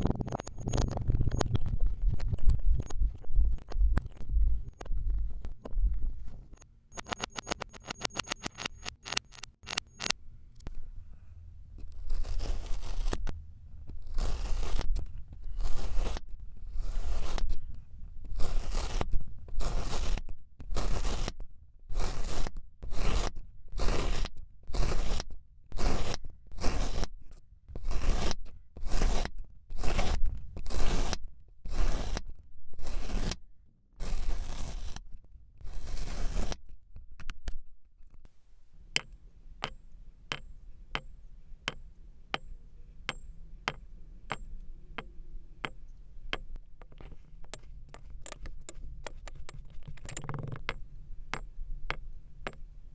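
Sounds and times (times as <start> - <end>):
sand being cut: 11.9 - 13.2, 14.0 - 17.6, 18.3 - 27.1, 27.8 - 32.2, 32.8 - 33.4, 34.0 - 35.0, 35.6 - 36.6.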